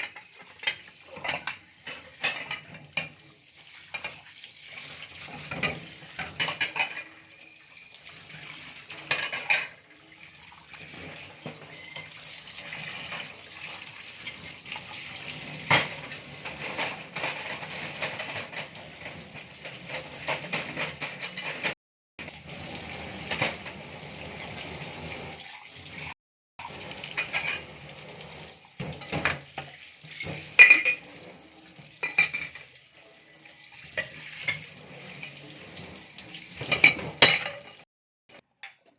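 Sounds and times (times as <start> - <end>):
plates and cutlery clinking: 0.0 - 3.2, 5.3 - 7.6, 8.9 - 9.8, 15.6 - 21.8, 27.1 - 27.7, 28.8 - 31.4, 32.0 - 32.7, 33.9 - 35.4, 36.6 - 38.9
water running in a sink: 0.0 - 38.8.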